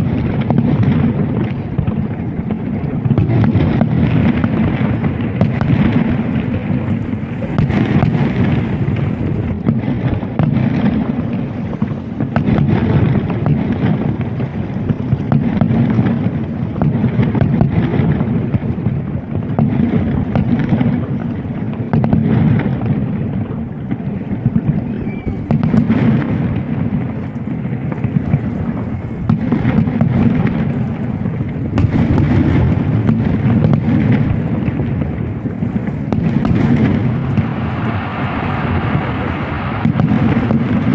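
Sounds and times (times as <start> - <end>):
fireworks booming and crackling: 0.0 - 40.9.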